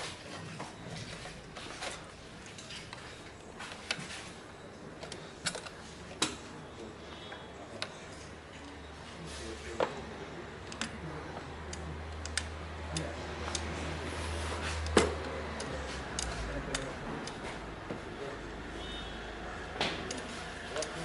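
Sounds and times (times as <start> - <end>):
tools clicking and tapping: 5.0 - 6.5, 10.6 - 13.8, 14.5 - 18.0, 19.8 - 21.0.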